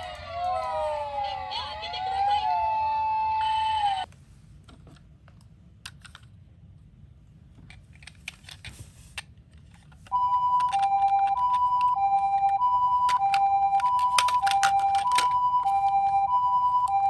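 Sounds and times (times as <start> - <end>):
toy two-tone siren: 0.0 - 4.1, 10.1 - 17.0
plastic toy cars clicking: 4.7 - 6.4, 7.5 - 16.2.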